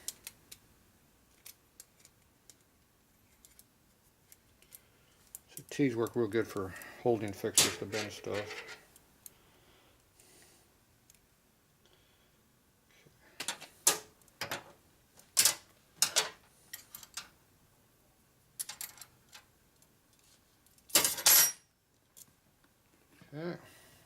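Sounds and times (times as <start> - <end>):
metal tools clicking and clinking: 7.5 - 8.8.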